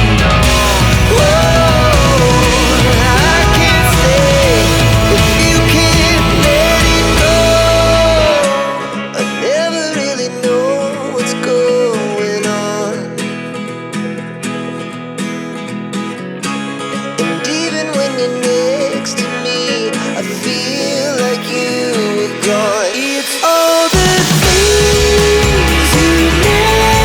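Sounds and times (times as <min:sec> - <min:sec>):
deep bass: 0:00.0 - 0:08.4, 0:24.4 - 0:27.0
person singing: 0:00.0 - 0:13.1, 0:17.2 - 0:27.0
guitar: 0:00.0 - 0:27.0.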